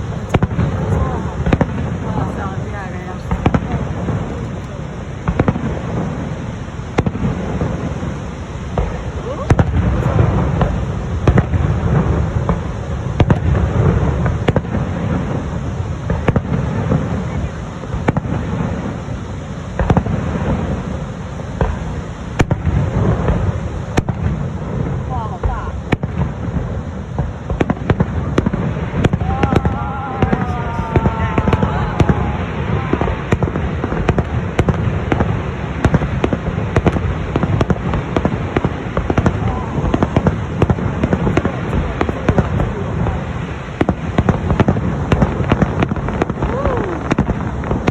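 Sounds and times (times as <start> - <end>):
steady noise wash: 0.0 - 46.4
fireworks bangs: 0.0 - 47.9
low rumble: 28.0 - 45.0.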